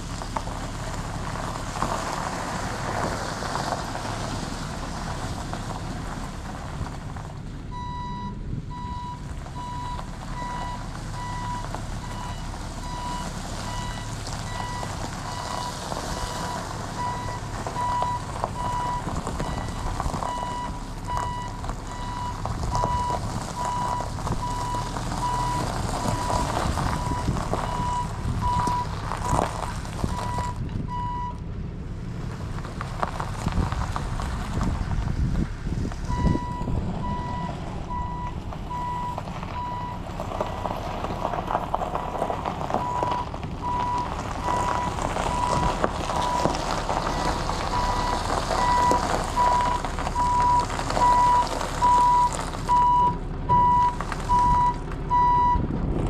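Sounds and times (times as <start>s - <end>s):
truck engine running: 0.0s - 56.0s
reversing alarm beeping: 7.7s - 26.4s, 30.1s - 31.4s, 36.1s - 40.0s, 47.2s - 55.6s.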